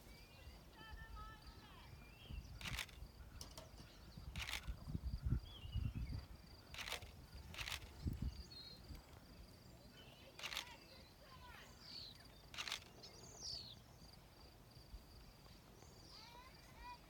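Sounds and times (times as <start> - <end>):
insects chirring: 1.4 - 17.0
wind rumbling on microphone: 1.9 - 9.1
sharp clicks: 2.6 - 3.8, 4.4 - 4.8, 6.7 - 8.1, 10.4 - 10.8, 12.5 - 13.0.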